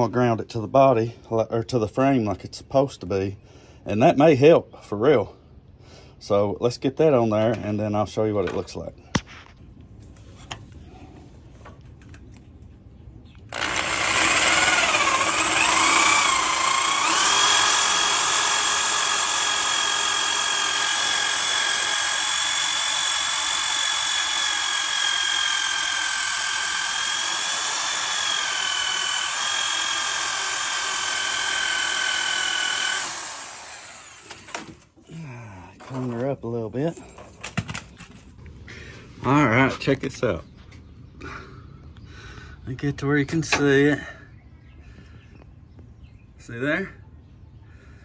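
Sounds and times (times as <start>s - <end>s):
electric power drill whine: 13.5s - 34.8s.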